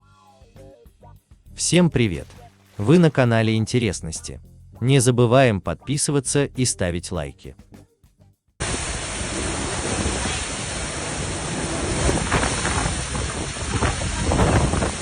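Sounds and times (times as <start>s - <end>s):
wind and rain on microphone: 8.6s - 15.0s.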